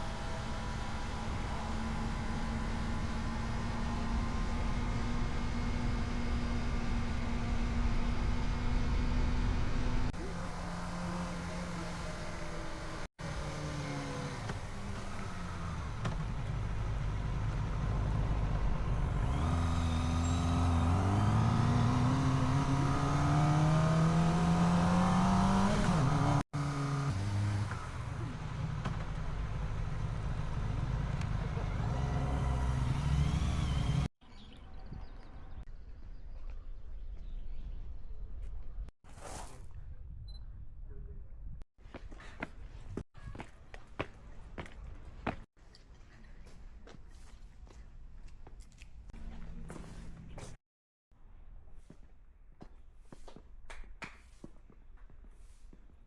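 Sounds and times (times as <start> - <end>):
motorcycle engine accelerating: 0.0 - 34.1.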